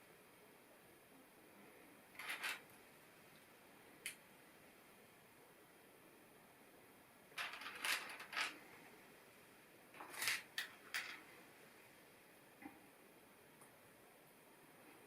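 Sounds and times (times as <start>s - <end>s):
plastic pieces clicking and rattling: 2.2s - 2.6s, 7.4s - 8.6s, 10.0s - 11.2s.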